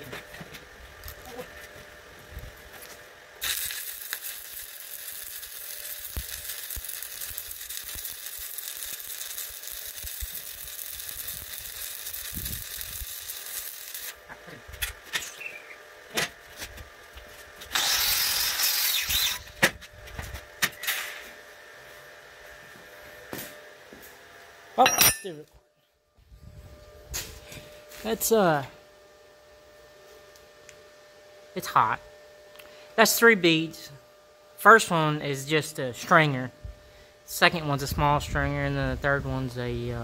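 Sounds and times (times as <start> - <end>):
welding arc crackling: 2.6 - 15.6, 17.6 - 19.6.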